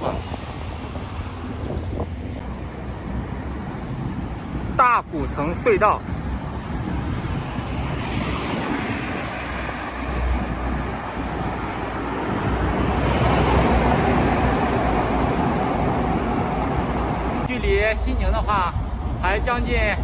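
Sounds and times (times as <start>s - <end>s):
road traffic: 0.0s - 20.0s
wind on microphone: 0.0s - 20.0s
vehicle passing: 5.9s - 17.5s.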